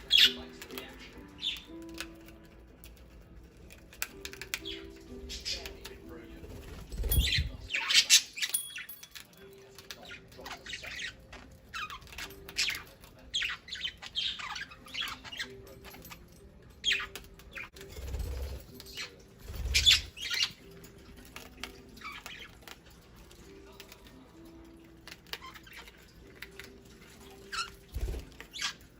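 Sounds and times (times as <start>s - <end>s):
budgerigars chirping: 0.0s - 2.0s, 4.3s - 6.1s, 10.1s - 15.7s, 16.8s - 17.7s, 19.6s - 20.7s.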